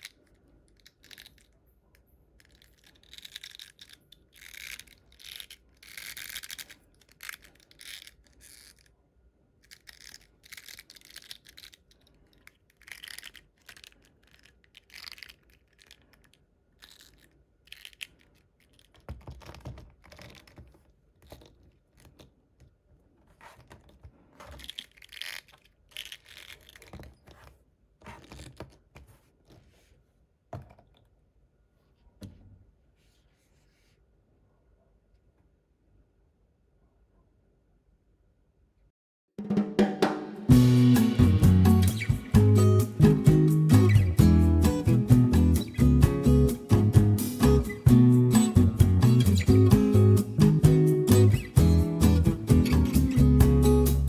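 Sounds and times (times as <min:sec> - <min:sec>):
plastic packaging rustling: 0:23.2 - 0:29.9.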